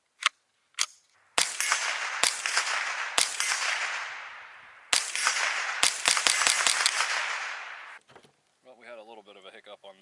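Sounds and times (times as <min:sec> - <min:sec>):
rifle shots with echo: 0:01.2 - 0:08.0.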